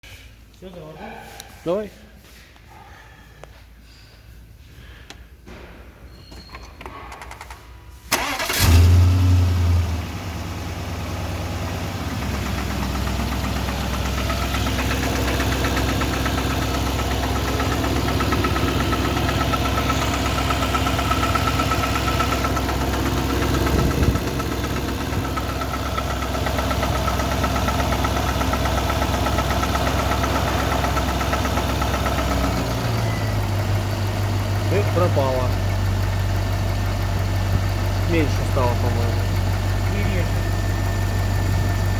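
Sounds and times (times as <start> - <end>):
car engine starting and idling: 7.2 - 41.9
engine knock: 11.9 - 41.9.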